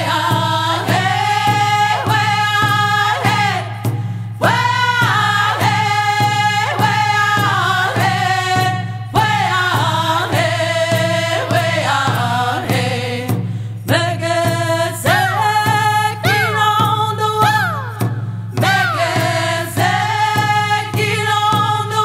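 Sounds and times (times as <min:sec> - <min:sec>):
person singing: 0:15.0 - 0:19.9.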